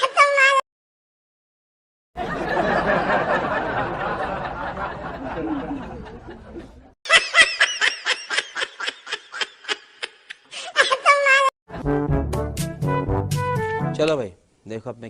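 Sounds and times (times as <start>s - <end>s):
crowd laughing: 2.2s - 11.0s, 11.7s - 12.0s.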